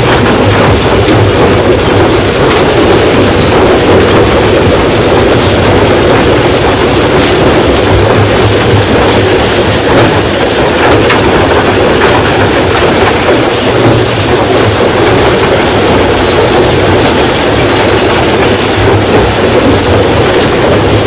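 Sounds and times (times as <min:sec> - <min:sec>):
rock crushing machine clattering: 0:00.0 - 0:21.0.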